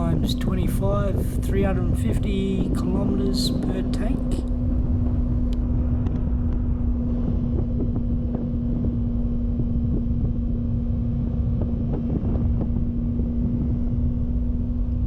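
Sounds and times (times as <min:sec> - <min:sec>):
motorcycle engine cruising: 0:00.0 - 0:05.6
wind buffeting microphone: 0:00.0 - 0:05.9, 0:14.0 - 0:15.0.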